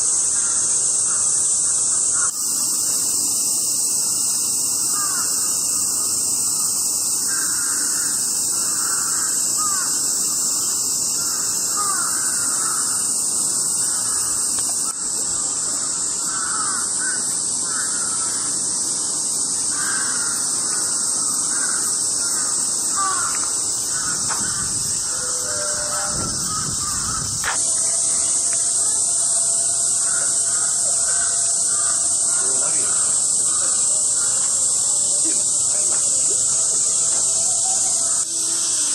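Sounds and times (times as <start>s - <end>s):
cicadas buzzing: 0.0s - 38.9s
birds calling: 4.9s - 5.5s, 7.3s - 18.5s, 19.8s - 29.0s.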